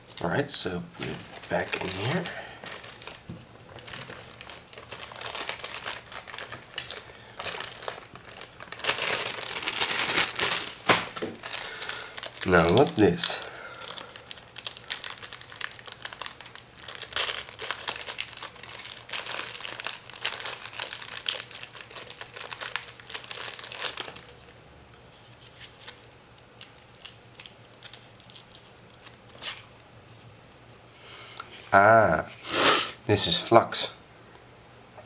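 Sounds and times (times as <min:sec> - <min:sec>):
packaging crinkling and tearing: 0:01.0 - 0:29.8.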